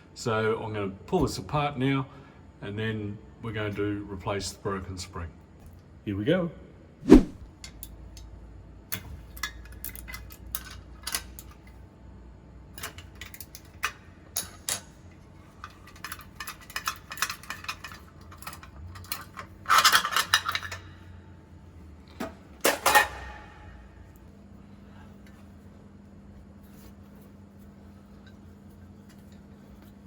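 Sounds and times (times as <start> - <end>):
metal parts clicking and clinking: 15.6 - 20.8.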